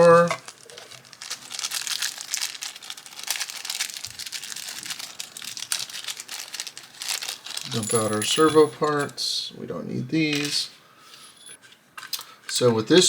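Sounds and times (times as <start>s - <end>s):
plastic packaging crinkling: 0.0s - 9.0s.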